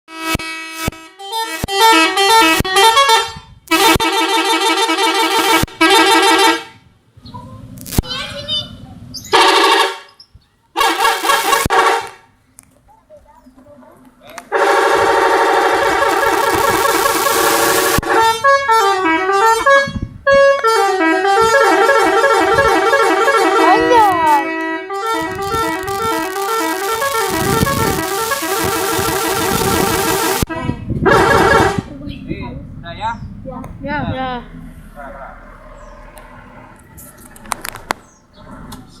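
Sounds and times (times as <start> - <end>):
multi-tone bus horn tune: 0.1 - 6.9, 9.3 - 10.2, 10.8 - 12.3, 14.5 - 32.0
sharp clicks: 7.8 - 8.1.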